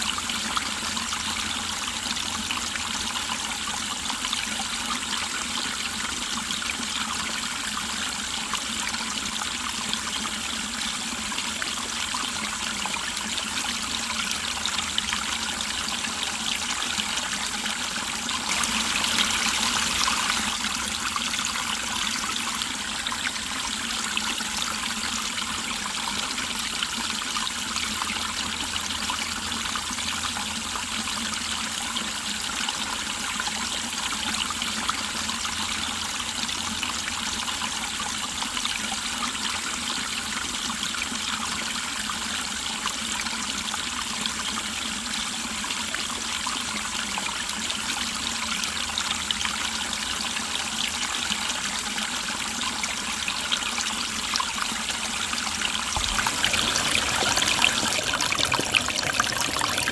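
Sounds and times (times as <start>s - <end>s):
stream flowing over rocks: 13.9s - 25.0s, 51.0s - 59.9s.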